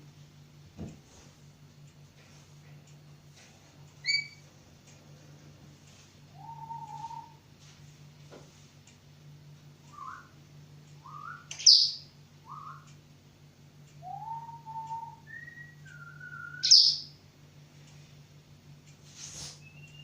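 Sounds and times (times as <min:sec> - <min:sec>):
loud high-pitched bird call: 0:04.0 - 0:04.4, 0:11.0 - 0:12.9, 0:16.4 - 0:17.2
pet bird whistling: 0:04.0 - 0:04.4, 0:06.4 - 0:07.4, 0:09.9 - 0:10.3, 0:11.0 - 0:12.9, 0:14.0 - 0:17.2, 0:19.5 - 0:20.0.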